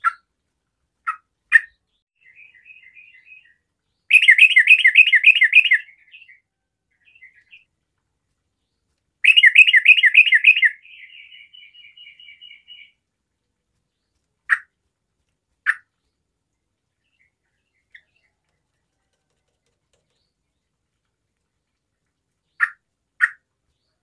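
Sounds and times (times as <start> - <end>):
sharp bird calls: 1.0 - 6.4, 9.2 - 13.0, 22.4 - 24.0
bird singing bubbly notes: 4.1 - 6.4, 9.2 - 12.9.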